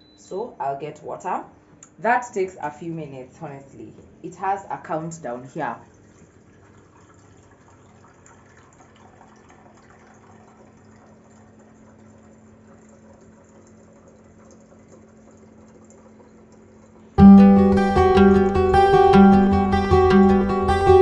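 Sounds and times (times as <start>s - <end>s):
acoustic guitar music: 17.2s - 21.0s
water dispenser humming: 17.2s - 21.0s.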